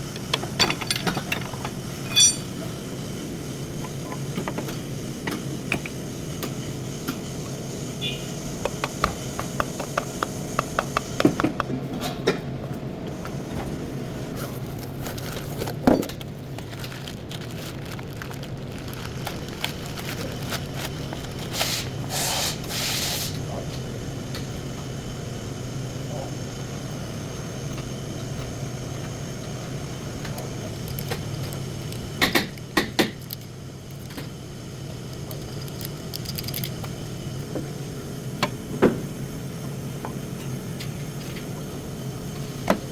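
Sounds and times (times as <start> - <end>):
air hiss bursts: 21.4 - 23.5.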